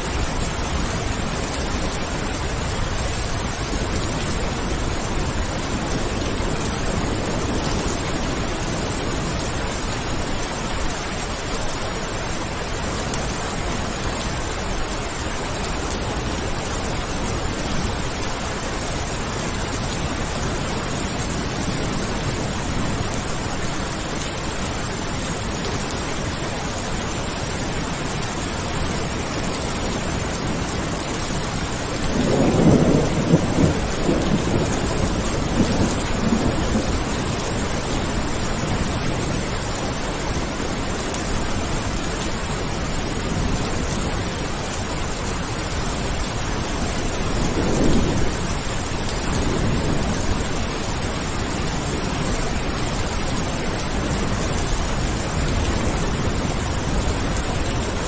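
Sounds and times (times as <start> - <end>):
steady rain: 0.0 - 58.0
thunder rolling: 32.1 - 37.6.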